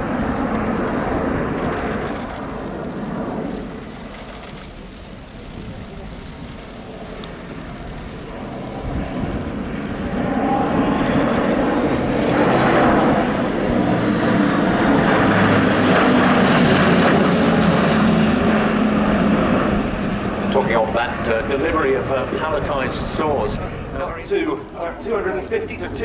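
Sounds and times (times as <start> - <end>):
propeller aircraft engines droning: 0.0 - 26.0.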